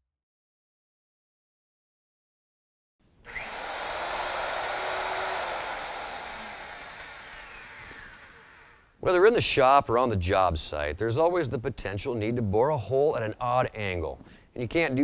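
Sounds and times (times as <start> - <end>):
drill motor whirring: 3.3 - 8.9.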